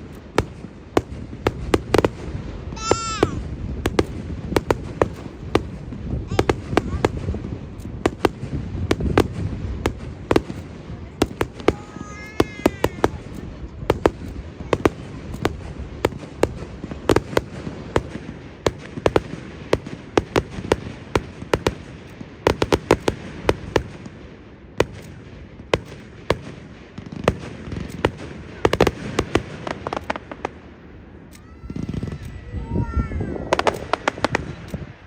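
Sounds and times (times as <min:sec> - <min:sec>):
rumble of firework launches: 0:00.0 - 0:24.2
fireworks bangs and crackles: 0:00.0 - 0:35.0.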